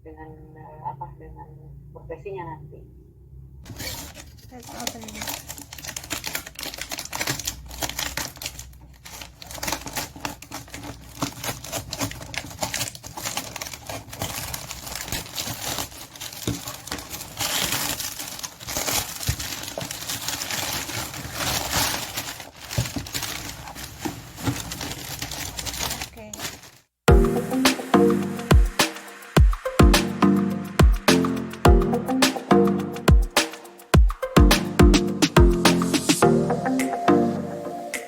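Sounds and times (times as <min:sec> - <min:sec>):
crinkling and rustling: 0:03.6 - 0:27.5.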